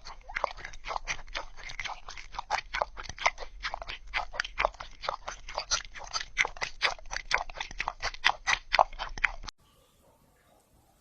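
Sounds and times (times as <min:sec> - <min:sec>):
cat crunching dry kibble: 0:00.0 - 0:09.4.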